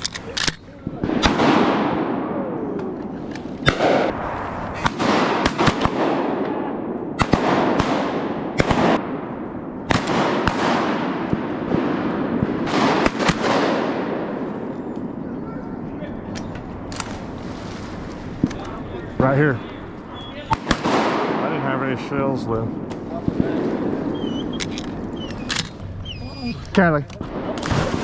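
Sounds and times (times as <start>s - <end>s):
shotgun blasts with echo: 0.7s - 15.2s, 20.4s - 25.7s, 27.2s - 28.0s.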